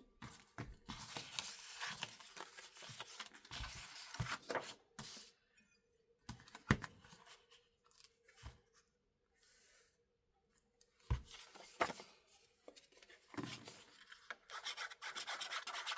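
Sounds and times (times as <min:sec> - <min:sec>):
paper rustling and crinkling: 0:00.3 - 0:05.2, 0:11.2 - 0:14.6.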